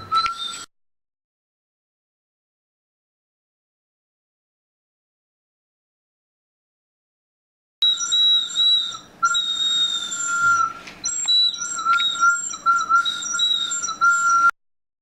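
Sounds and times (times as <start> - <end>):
bird whistle shrill note: 0.0 - 0.7, 7.8 - 14.5.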